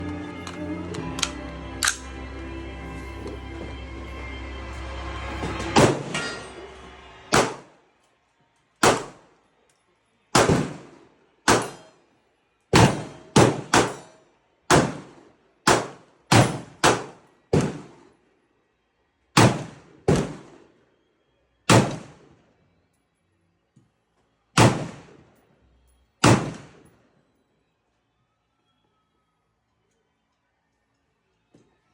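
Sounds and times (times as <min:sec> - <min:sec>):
music: 0:00.0 - 0:14.6, 0:27.3 - 0:31.9
gunshots with echo: 0:05.4 - 0:06.6, 0:07.3 - 0:07.7, 0:08.8 - 0:09.2, 0:10.4 - 0:11.9, 0:12.8 - 0:14.1, 0:14.7 - 0:18.0, 0:19.4 - 0:20.6, 0:21.7 - 0:22.2, 0:24.6 - 0:25.2, 0:26.2 - 0:26.8.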